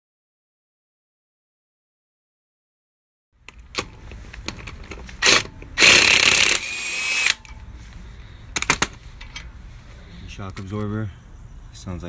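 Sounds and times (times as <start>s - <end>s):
tools clicking and clanking: 3.4s - 7.7s, 8.5s - 9.6s, 10.4s - 11.0s
power tool running: 5.2s - 7.4s.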